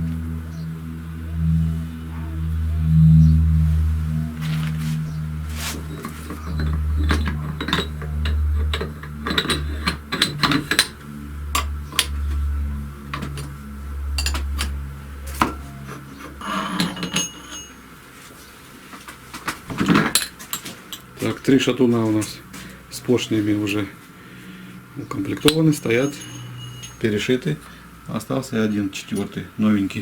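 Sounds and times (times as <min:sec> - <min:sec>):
low pulsing hum: 0:00.0 - 0:18.0, 0:24.2 - 0:28.1
metal parts clinking: 0:05.8 - 0:11.0, 0:14.2 - 0:14.8, 0:16.4 - 0:17.9, 0:25.1 - 0:27.3.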